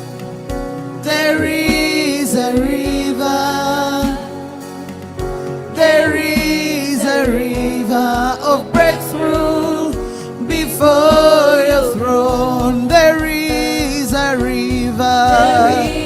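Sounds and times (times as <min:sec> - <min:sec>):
keyboard chords: 0:00.0 - 0:16.0
person singing melody: 0:05.7 - 0:16.0
steady bass beat: 0:07.3 - 0:16.0.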